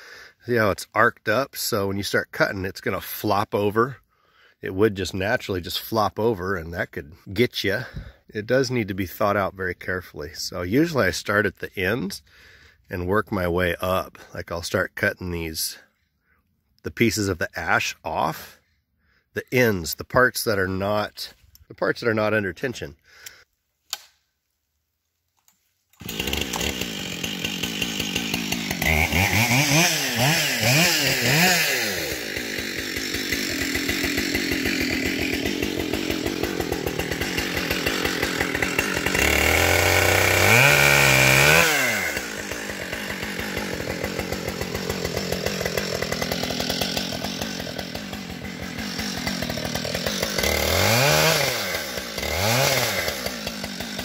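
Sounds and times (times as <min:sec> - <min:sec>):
chainsaw cutting wood: 0:26.0 - 0:54.0.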